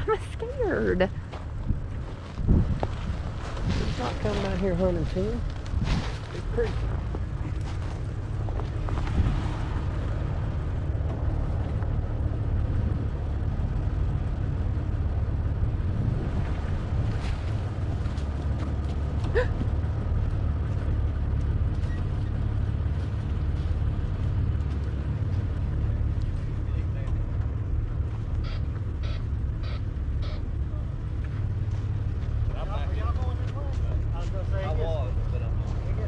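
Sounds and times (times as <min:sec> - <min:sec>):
vehicle engine rumbling: 0:00.0 - 0:36.0
short rising squeak: 0:21.8 - 0:22.3.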